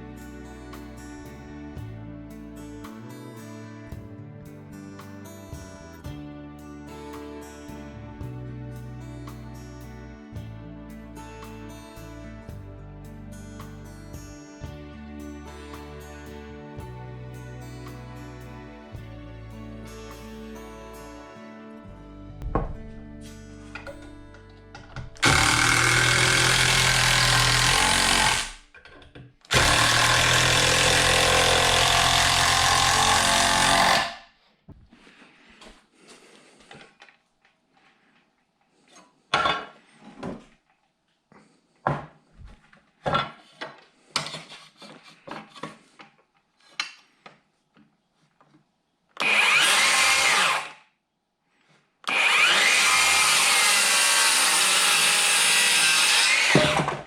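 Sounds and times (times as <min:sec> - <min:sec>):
power tool running: 0:25.2 - 0:28.6, 0:29.5 - 0:34.2, 0:49.2 - 0:50.8, 0:52.1 - 0:57.0.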